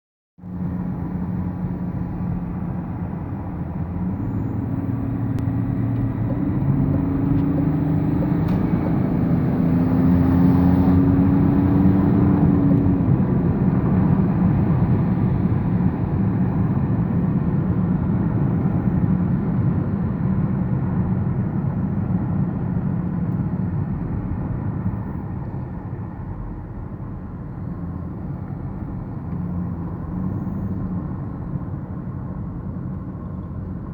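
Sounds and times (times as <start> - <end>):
diesel engine running: 0.4 - 33.9
turbo whine: 3.2 - 22.8.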